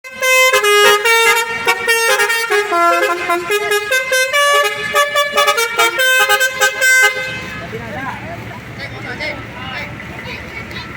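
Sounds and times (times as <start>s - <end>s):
air horns playing quick tune: 0.0s - 7.7s.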